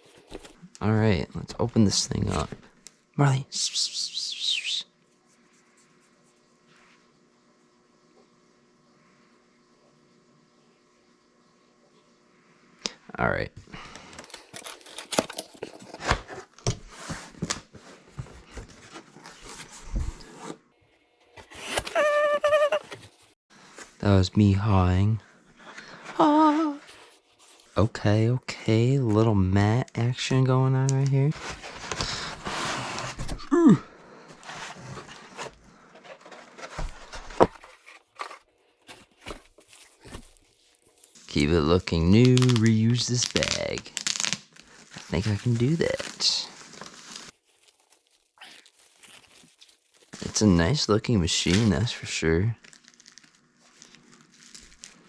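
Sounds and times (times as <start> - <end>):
packaging rustling and crinkling: 0.0 - 0.6, 14.1 - 17.8, 21.3 - 23.4, 26.9 - 27.7, 34.5 - 41.3, 42.2 - 50.4, 52.6 - 55.0.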